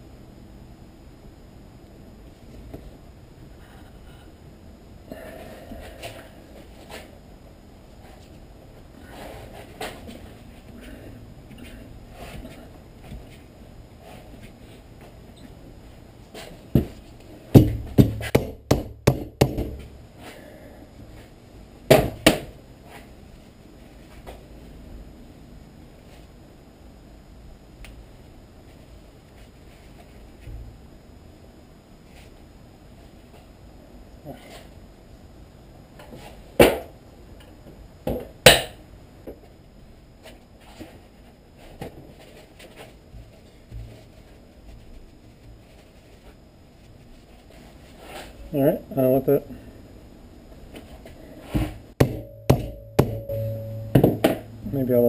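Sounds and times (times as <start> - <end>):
sharp knocks: 17.5 - 19.9, 52.0 - 54.6.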